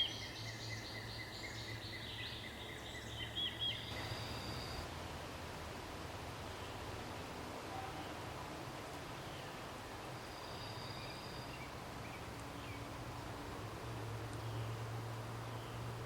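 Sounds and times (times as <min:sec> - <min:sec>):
faint bird chirps: 0:00.0 - 0:04.8, 0:10.2 - 0:12.9.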